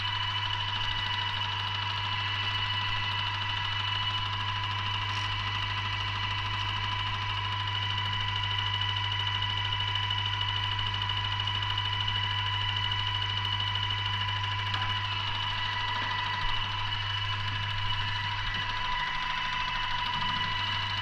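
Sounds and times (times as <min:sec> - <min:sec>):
paint sprayer humming and whining: 0:00.0 - 0:21.0.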